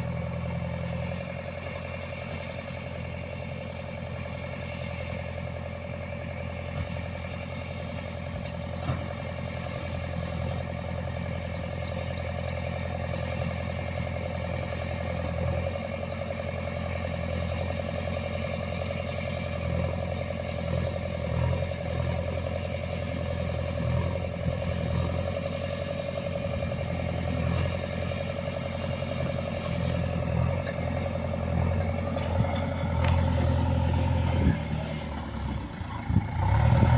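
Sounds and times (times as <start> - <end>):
engine running with clatter: 0.0 - 36.9.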